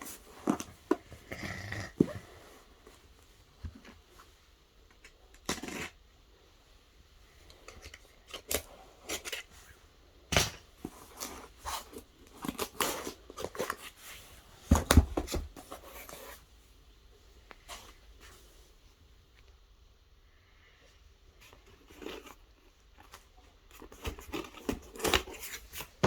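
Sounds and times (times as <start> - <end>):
packaging rustling and tearing: 10.4 - 16.4, 23.0 - 26.0.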